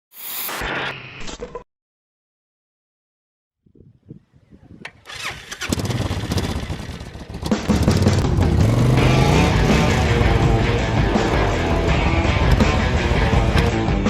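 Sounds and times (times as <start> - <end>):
engine starting and revving: 5.0 - 13.7
rock music: 7.5 - 14.0.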